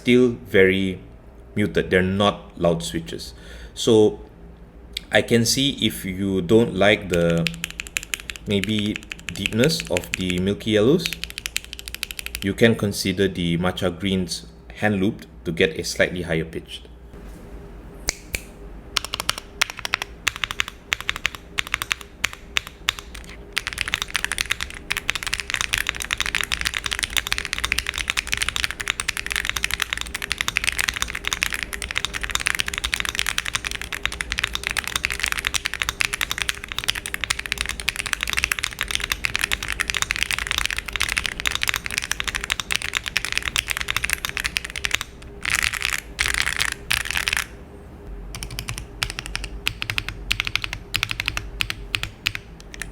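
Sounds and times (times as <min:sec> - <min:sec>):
mechanical keyboard typing: 0:07.1 - 0:12.6, 0:19.0 - 0:47.5, 0:48.3 - 0:52.9.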